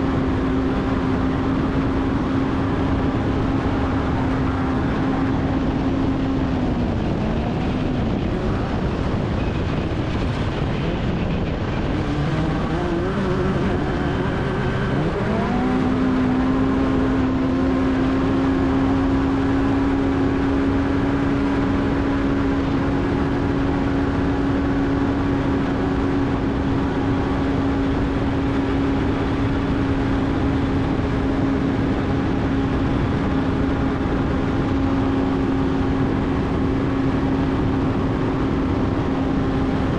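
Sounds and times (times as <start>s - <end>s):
race car engine revving: 0.0s - 23.4s
constant rushing noise: 0.0s - 39.9s.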